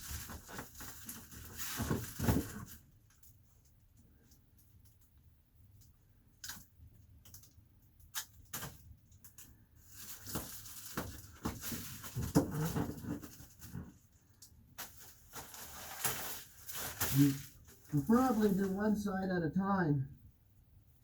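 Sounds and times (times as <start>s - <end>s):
foil insulation crinkling: 0.0s - 3.7s, 5.8s - 14.0s, 14.7s - 19.0s.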